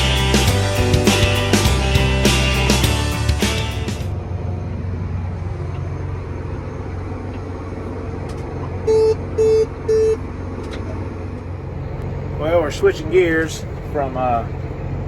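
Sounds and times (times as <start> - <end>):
vehicle engine humming: 0.0 - 15.0
short electronic beeps: 8.8 - 10.2.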